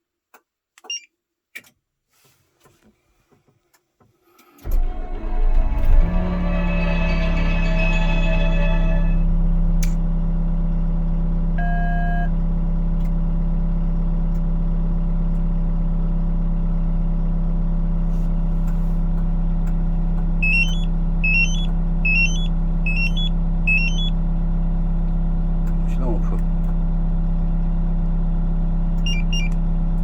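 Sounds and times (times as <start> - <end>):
diesel engine idling: 4.6 - 9.6, 18.2 - 30.0
two-note electronic chirps: 4.8 - 9.2, 20.4 - 24.1, 29.1 - 29.6
electronic beep: 5.1 - 9.2, 20.4 - 24.1, 29.1 - 29.6.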